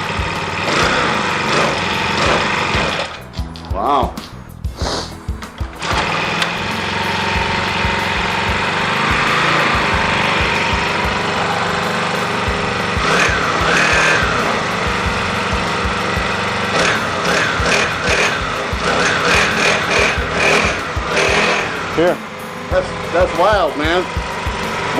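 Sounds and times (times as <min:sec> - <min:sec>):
small dirt bike engine running: 0:00.0 - 0:03.3, 0:05.6 - 0:24.9.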